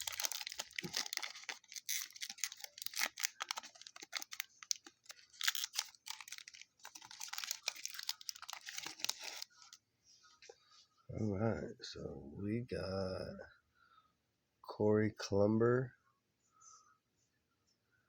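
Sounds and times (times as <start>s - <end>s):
card pack wrapper crinkling: 0.0s - 9.8s.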